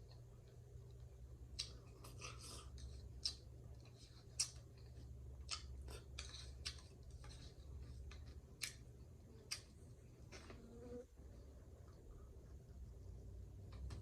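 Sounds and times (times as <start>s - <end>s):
chewing crunchy food: 0.0s - 10.6s.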